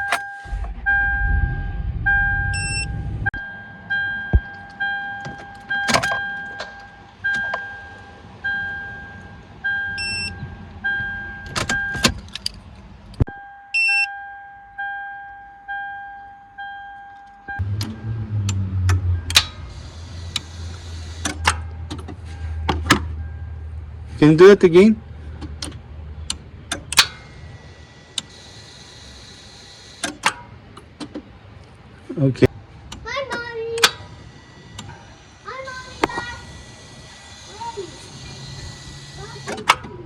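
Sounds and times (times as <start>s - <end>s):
engine cranking and catching: 0.0s - 3.4s, 4.2s - 13.3s, 17.6s - 40.0s
two-tone warning chime: 2.6s - 12.1s, 13.3s - 18.3s.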